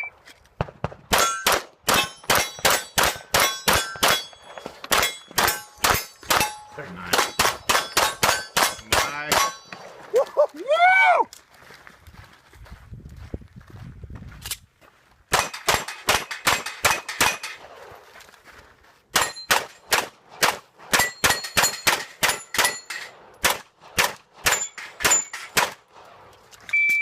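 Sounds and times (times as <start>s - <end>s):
short beep: 0.0s - 0.2s, 26.7s - 27.0s
pistol shots: 0.6s - 9.8s, 15.3s - 17.8s, 19.1s - 26.0s
steel targets ringing: 1.2s - 9.8s, 19.2s - 19.9s, 21.0s - 23.2s, 24.5s - 25.6s.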